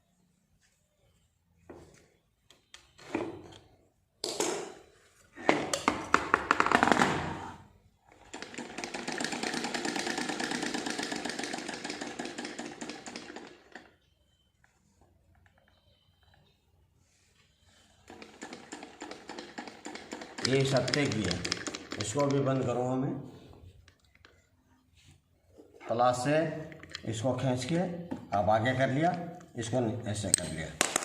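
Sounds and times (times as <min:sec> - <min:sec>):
hand-cranked sewing machine clatter: 0:08.2 - 0:13.9, 0:18.1 - 0:22.7.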